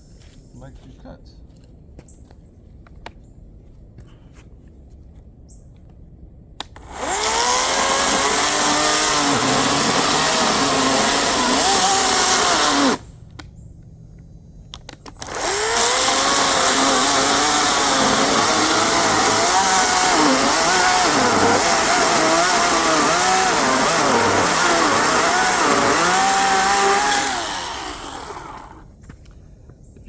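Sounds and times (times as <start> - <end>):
electric chainsaw cutting wood: 6.8 - 13.0, 15.1 - 28.9.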